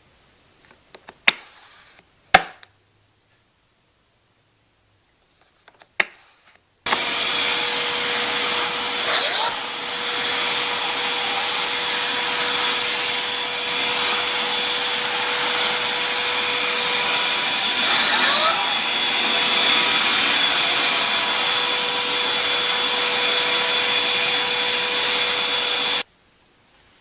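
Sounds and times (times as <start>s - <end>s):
upright vacuum cleaner running: 6.9s - 26.1s.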